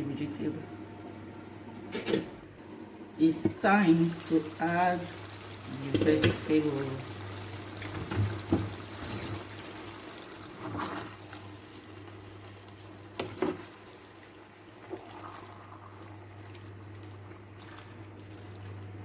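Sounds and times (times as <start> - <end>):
soup simmering in a pot: 3.0 - 19.0.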